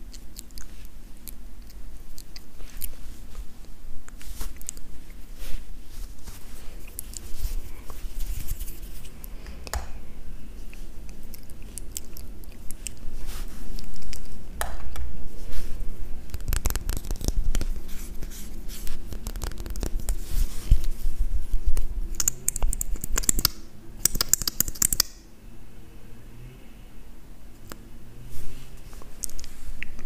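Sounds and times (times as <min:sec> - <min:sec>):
crisp rustling: 0:00.0 - 0:09.5, 0:10.6 - 0:14.5, 0:15.3 - 0:21.9
scratching on objects: 0:00.0 - 0:09.9, 0:10.6 - 0:23.5.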